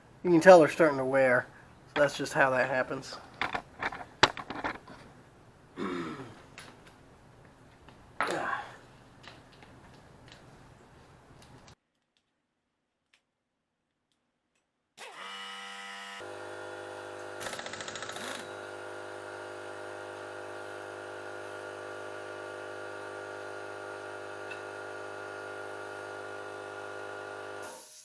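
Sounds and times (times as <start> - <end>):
power tool hammering: 15.0 - 27.8
electric power tool running: 15.0 - 28.0.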